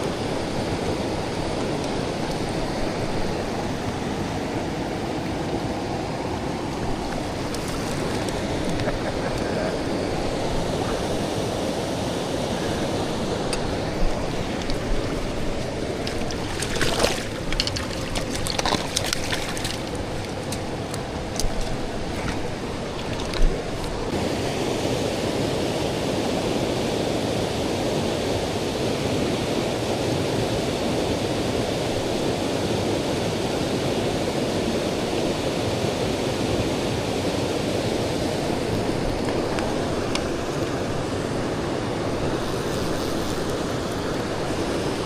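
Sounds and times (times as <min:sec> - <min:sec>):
river water rushing: 0:00.0 - 0:45.0.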